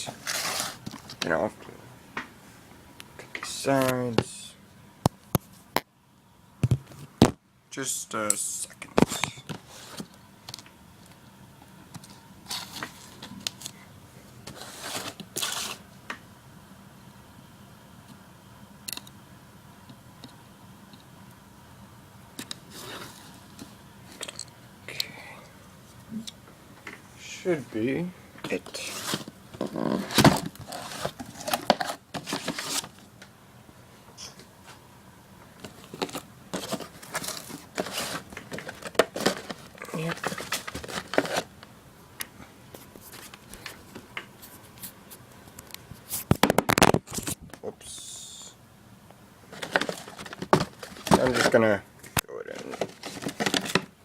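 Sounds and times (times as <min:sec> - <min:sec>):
cardboard rustling and scraping: 0:00.0 - 0:01.4, 0:09.0 - 0:10.1, 0:12.0 - 0:13.7, 0:14.4 - 0:15.8, 0:22.6 - 0:23.8, 0:28.5 - 0:33.0, 0:35.6 - 0:41.6, 0:42.8 - 0:45.0, 0:49.5 - 0:51.6, 0:52.5 - 0:54.0.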